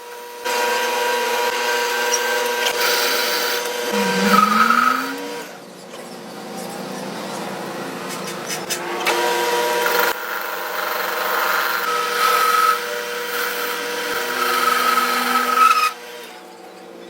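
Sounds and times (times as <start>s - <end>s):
power tool whining: 2.7s - 5.6s.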